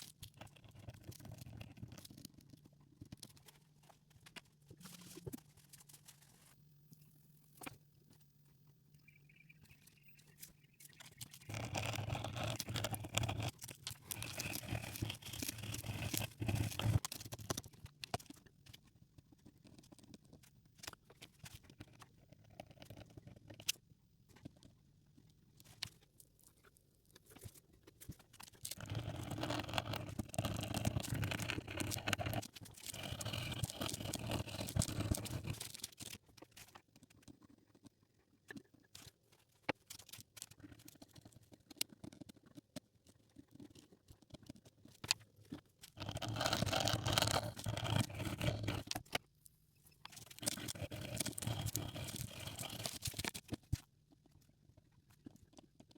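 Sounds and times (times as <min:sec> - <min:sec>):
light scratches and clicks: 0:00.0 - 0:08.3, 0:09.0 - 0:55.9
brush scrubbing a coin: 0:50.4 - 0:53.3.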